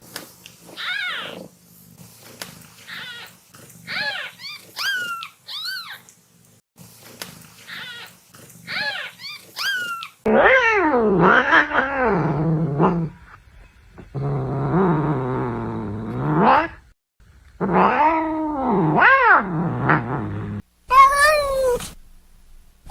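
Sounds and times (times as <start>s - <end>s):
kittens mewing: 20.9s - 22.0s
long low cat meows: 20.9s - 22.0s.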